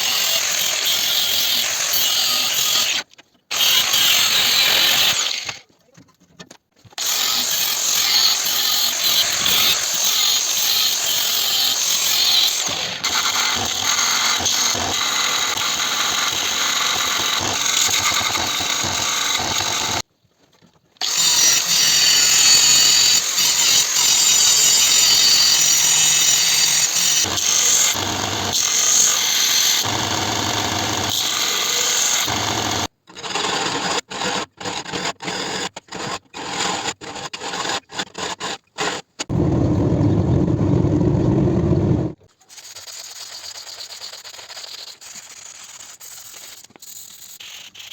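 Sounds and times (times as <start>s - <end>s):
power tool grinding steel: 0.0s - 5.6s, 7.0s - 20.0s, 21.0s - 32.9s.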